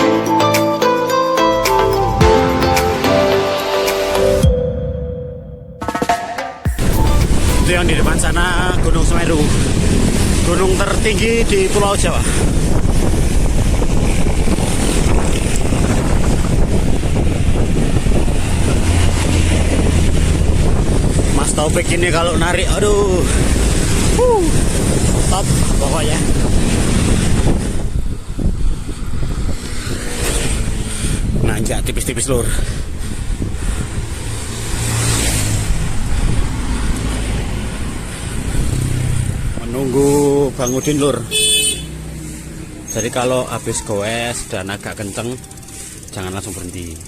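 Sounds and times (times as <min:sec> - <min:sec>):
vehicle passing: 0:06.7 - 0:47.0
wind buffeting microphone: 0:06.8 - 0:40.6.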